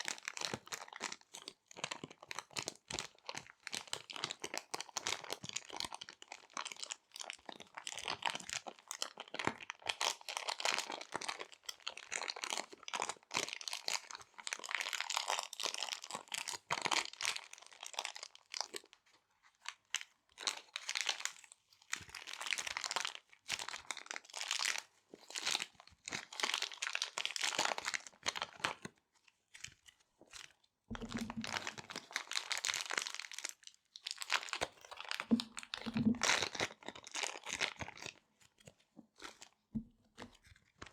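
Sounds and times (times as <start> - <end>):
plastic bags crinkling: 30.9 - 38.2.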